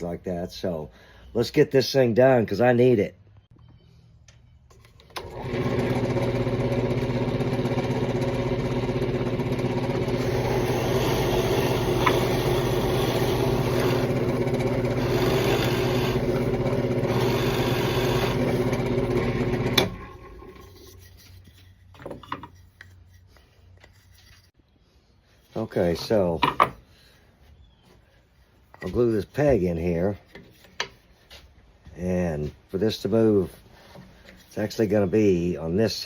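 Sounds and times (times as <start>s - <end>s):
electric power tool running: 5.1s - 20.5s.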